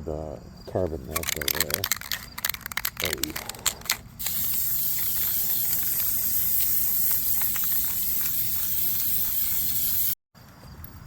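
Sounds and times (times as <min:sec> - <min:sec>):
aerosol spray can hissing: 0:01.9 - 0:10.2.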